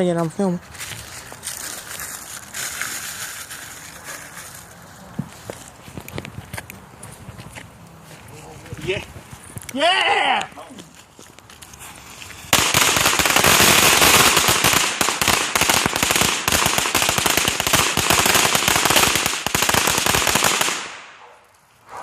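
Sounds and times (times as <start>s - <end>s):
firecrackers popping: 11.5s - 21.2s.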